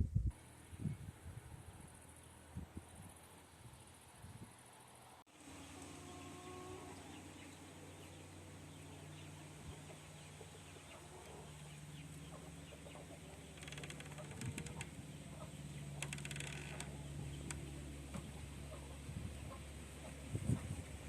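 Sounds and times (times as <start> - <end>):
steady low hum: 0.0 - 21.0
chickens clucking softly: 5.6 - 16.1, 16.9 - 21.0
rapid clicking or rustling: 13.5 - 15.0, 15.9 - 18.3.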